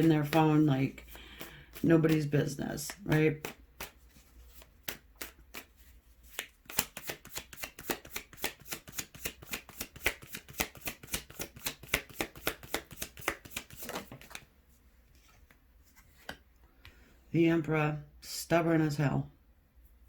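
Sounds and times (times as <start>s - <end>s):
cards shuffling: 0.0s - 14.5s.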